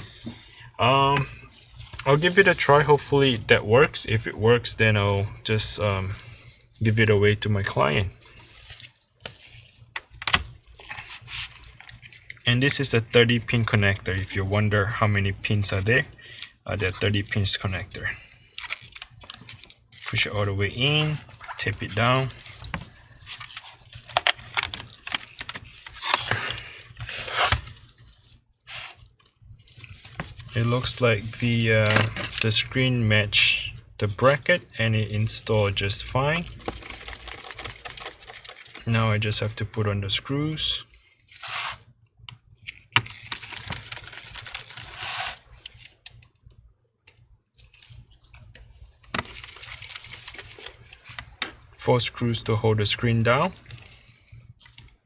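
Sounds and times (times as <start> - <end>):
handling rustle: 35.4 - 39.8, 42.7 - 46.0.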